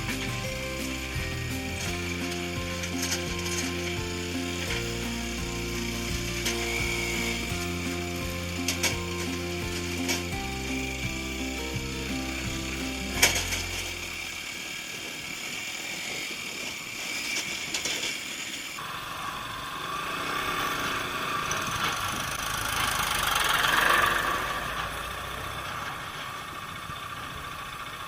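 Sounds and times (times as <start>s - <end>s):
vehicle engine running: 0.0s - 15.8s, 18.8s - 28.0s.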